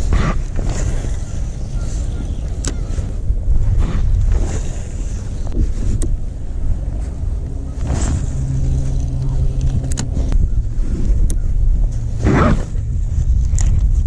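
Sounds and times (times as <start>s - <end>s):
low hum: 0.0s - 14.0s
vehicle low rumble: 0.0s - 14.0s
sharp clicks: 2.4s - 2.9s, 8.9s - 10.4s.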